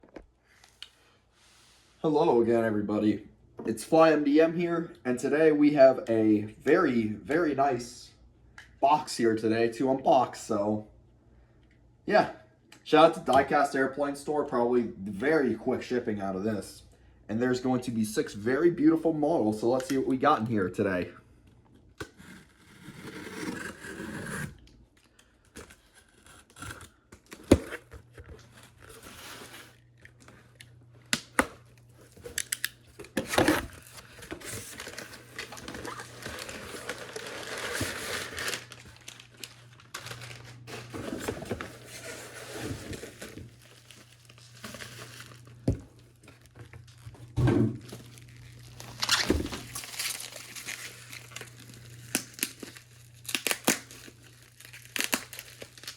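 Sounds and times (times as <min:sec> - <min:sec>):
tape tearing and crinkling: 0:22.0 - 0:55.9.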